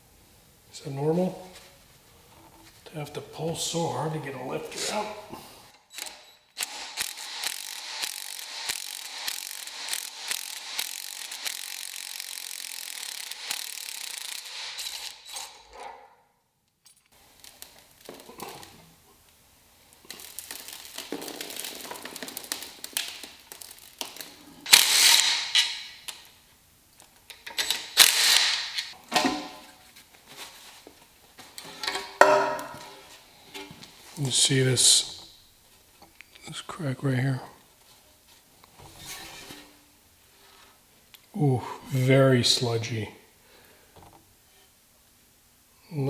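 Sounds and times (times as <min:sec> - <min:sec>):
socket ratchet clicking: 0:06.0 - 0:15.5
metal working noises: 0:27.3 - 0:29.9, 0:31.6 - 0:33.8.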